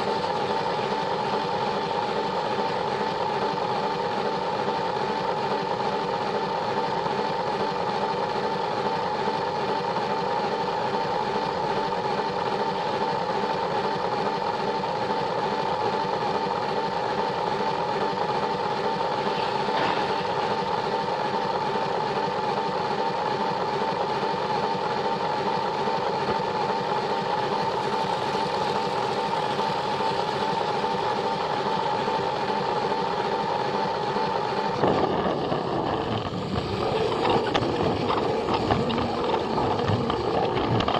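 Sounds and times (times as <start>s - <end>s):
toy train motor whirring: 34.9s - 40.9s.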